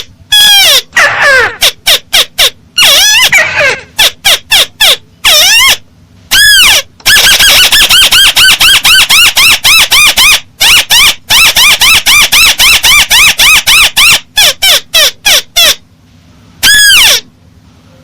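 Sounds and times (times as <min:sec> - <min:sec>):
crake calling: 0:00.3 - 0:15.8, 0:16.6 - 0:17.3.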